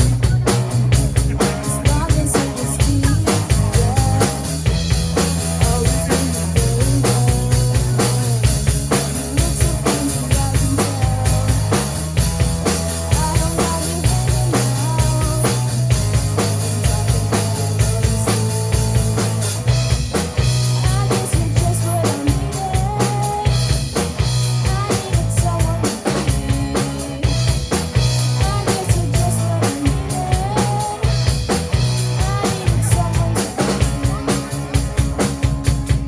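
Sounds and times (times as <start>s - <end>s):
bass line: 0.0s - 36.0s
drum kit beat: 0.0s - 36.0s
rock music melody: 0.0s - 36.0s.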